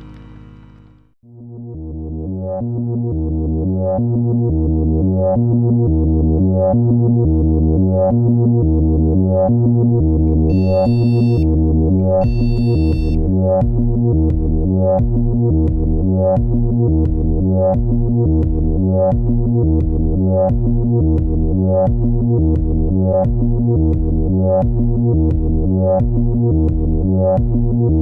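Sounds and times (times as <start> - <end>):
electronic synthesizer music: 10.3 - 13.2
held high tones: 10.5 - 11.4, 12.0 - 13.2.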